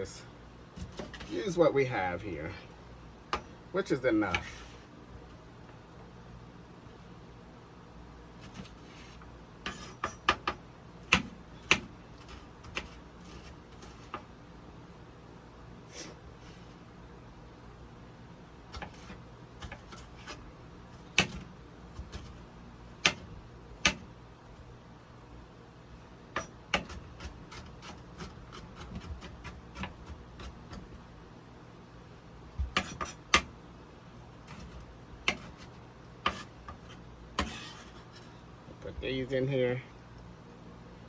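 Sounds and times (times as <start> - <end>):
knife chopping on cutting board: 9.7 - 14.2, 21.1 - 22.3, 23.0 - 24.0, 26.4 - 30.8, 32.6 - 33.5, 34.5 - 37.9.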